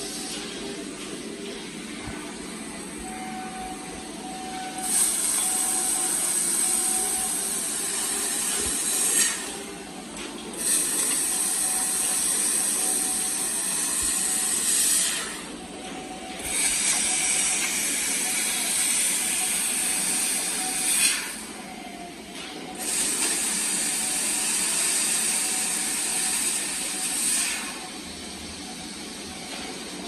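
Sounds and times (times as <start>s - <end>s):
steady machine hum: 0.0s - 30.0s
robotic welding hiss: 4.8s - 9.6s, 10.6s - 15.4s, 16.4s - 21.4s, 22.8s - 27.8s.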